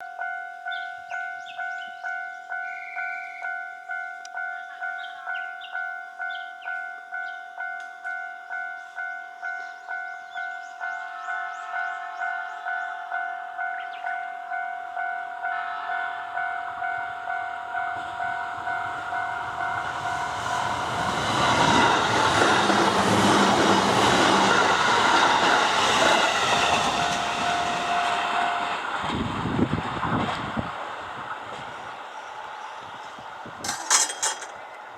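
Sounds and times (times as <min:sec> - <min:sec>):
electric train passing: 0:00.0 - 0:34.9
train wheel clatter: 0:19.0 - 0:30.6, 0:33.1 - 0:34.8.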